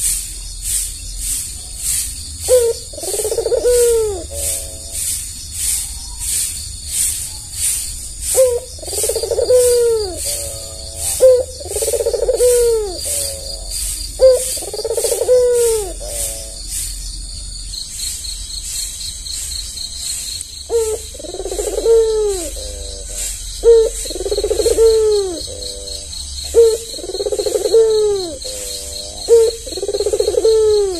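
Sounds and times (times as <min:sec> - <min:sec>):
steady high chirping: 0:00.0 - 0:30.9
dove cooing: 0:02.4 - 0:05.1, 0:08.2 - 0:16.8, 0:20.7 - 0:30.9.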